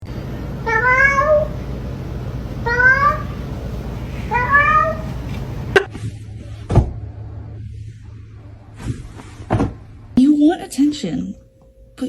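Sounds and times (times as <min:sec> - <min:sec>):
cat meowing: 0:00.6 - 0:01.6, 0:02.6 - 0:03.4, 0:04.3 - 0:05.2
thump: 0:06.7 - 0:07.0, 0:08.8 - 0:09.8.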